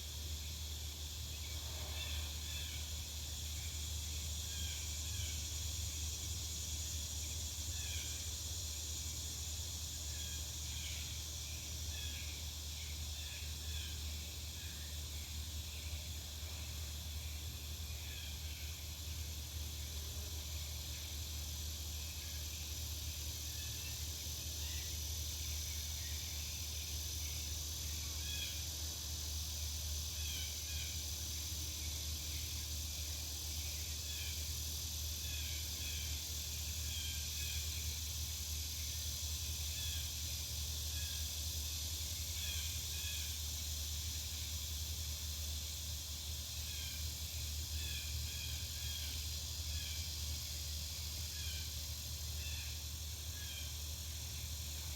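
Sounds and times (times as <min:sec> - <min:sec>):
low constant hum: 0:00.0 - 0:54.9
steady high hiss: 0:00.0 - 0:54.9.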